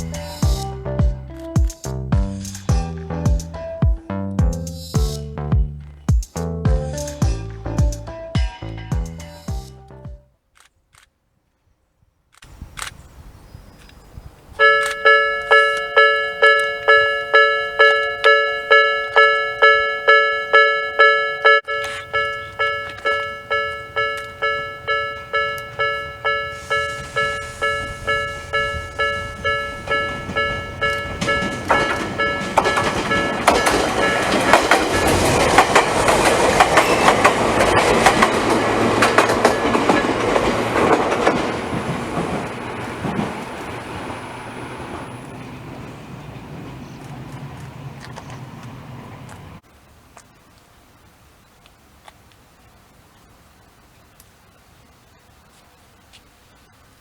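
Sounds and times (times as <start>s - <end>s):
train rumbling on rails: 13.2s - 49.6s
level crossing bell ringing: 14.6s - 35.8s, 36.5s - 40.5s.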